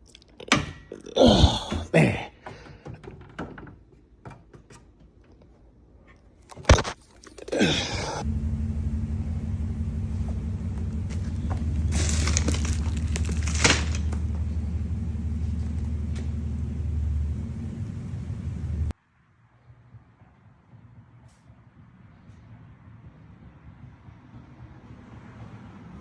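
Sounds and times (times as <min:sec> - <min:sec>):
car engine starting and idling: 0:08.2 - 0:19.0.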